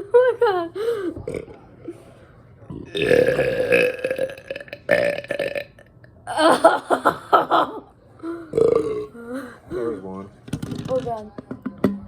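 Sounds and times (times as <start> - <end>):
person burping loudly: 2.8 - 6.6, 8.5 - 9.2.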